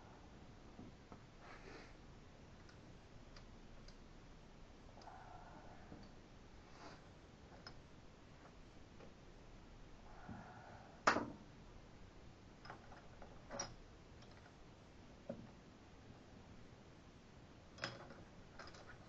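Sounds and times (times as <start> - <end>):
metal parts clicking and knocking: 12.6 - 14.6, 17.7 - 19.0.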